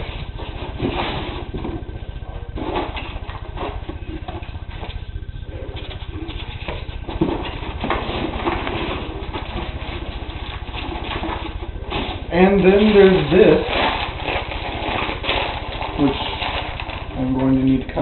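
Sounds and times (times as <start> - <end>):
steady low hum: 0.0 - 18.0
paper packing rustling: 5.8 - 18.0.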